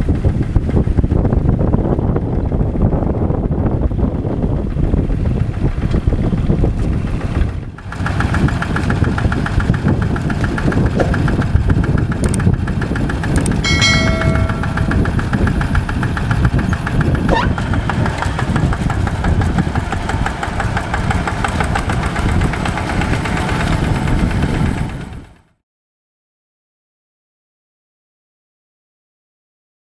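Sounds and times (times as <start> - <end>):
tractor engine rumbling: 3.9 - 25.4.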